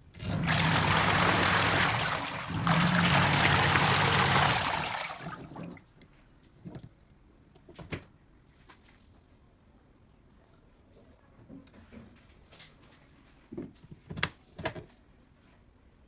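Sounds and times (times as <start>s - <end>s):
water rushing in washing machine: 0.0s - 5.8s.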